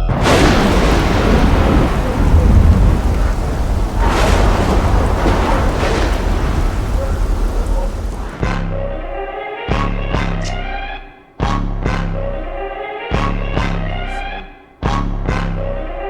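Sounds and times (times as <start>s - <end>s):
heavy rain: 0.0s - 8.8s
rolling thunder: 0.0s - 9.2s.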